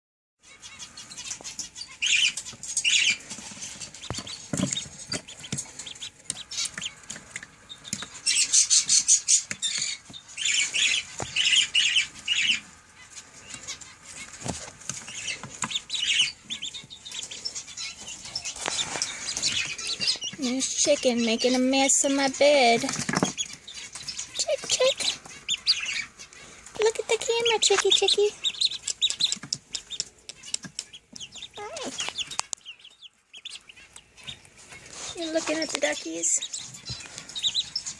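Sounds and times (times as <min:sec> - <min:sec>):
ducklings and chicks peeping: 0:00.4 - 0:37.9
small clicks and taps: 0:28.8 - 0:32.6.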